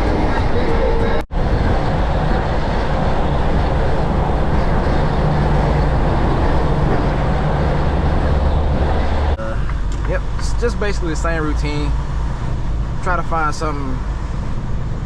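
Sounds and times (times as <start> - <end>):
low hum: 0.0 - 10.0
diesel engine drone: 0.0 - 15.0
road and tyre noise: 0.0 - 15.0.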